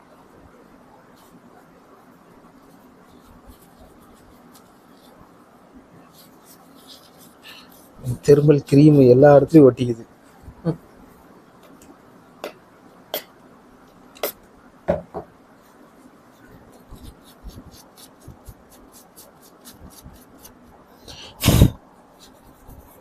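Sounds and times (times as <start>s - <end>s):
tissue paper scratching: 1.0s - 9.1s, 15.6s - 23.0s
loud knock: 14.9s - 15.3s.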